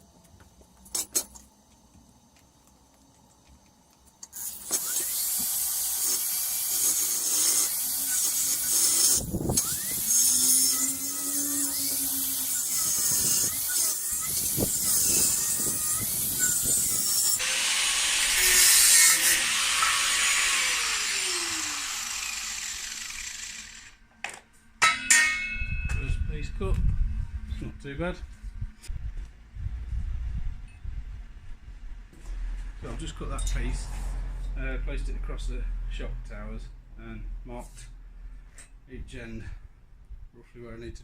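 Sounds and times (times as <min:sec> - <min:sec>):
angle grinder cutting steel: 0:04.3 - 0:24.0.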